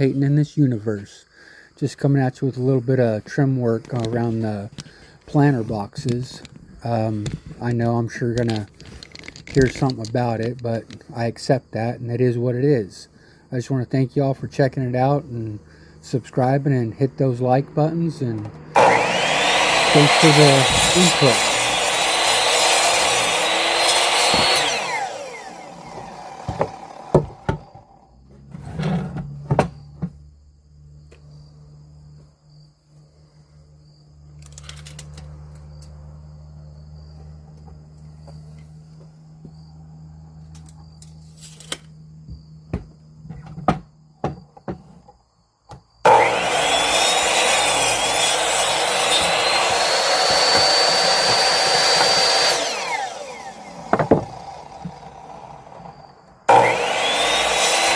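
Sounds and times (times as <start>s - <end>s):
power tool motor whine: 18.6s - 29.4s, 46.0s - 57.9s.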